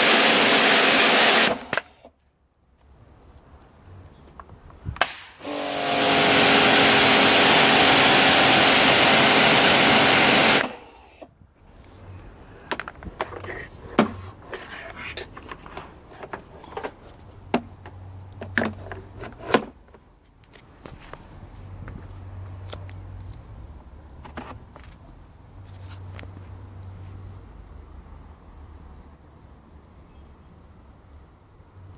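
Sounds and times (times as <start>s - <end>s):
pressure washer spraying: 0.0s - 2.1s, 5.0s - 11.2s.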